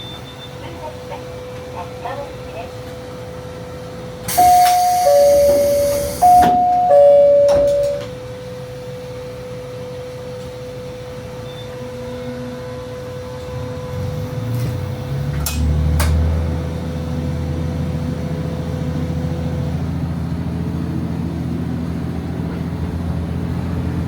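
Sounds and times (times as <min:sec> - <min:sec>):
two-tone electronic chime: 0:04.3 - 0:08.1
faint steady tone: 0:04.4 - 0:08.1.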